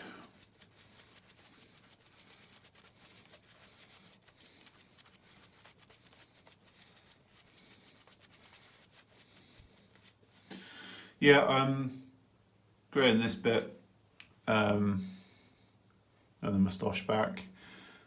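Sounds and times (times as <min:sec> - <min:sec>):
shaving brush crackling lather: 0:00.0 - 0:10.6.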